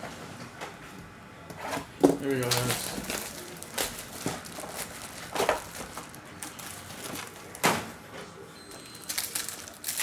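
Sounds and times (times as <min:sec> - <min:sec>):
card packs rustling: 0:02.1 - 0:08.0, 0:08.8 - 0:10.0.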